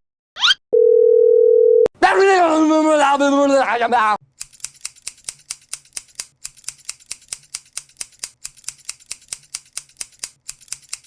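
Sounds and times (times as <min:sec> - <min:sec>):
rapid mechanical clicking: 0:04.3 - 0:11.0.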